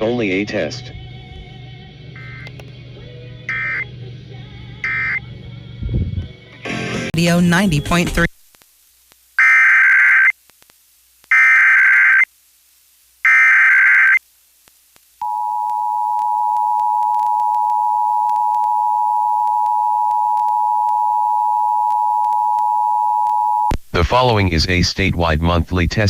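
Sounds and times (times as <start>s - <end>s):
two-tone attention signal: 2.2s - 2.5s, 3.5s - 3.8s, 4.8s - 5.2s
screeching digital header bursts: 3.5s - 3.9s, 4.8s - 5.2s.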